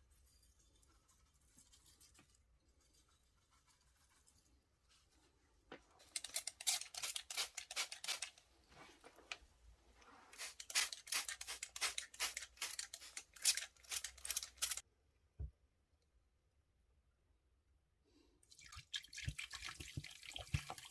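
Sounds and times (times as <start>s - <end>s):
hand scraping small part: 6.0s - 8.5s, 10.3s - 14.8s.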